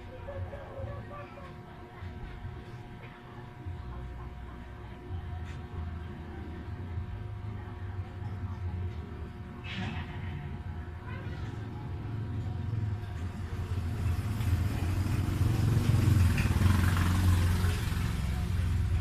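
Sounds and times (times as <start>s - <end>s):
vehicle engine rumbling: 8.0s - 19.0s.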